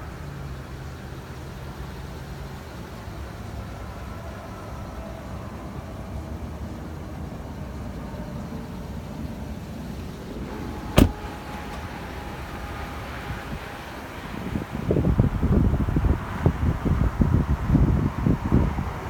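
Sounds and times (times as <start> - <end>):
sharp knock: 11.0 - 11.8.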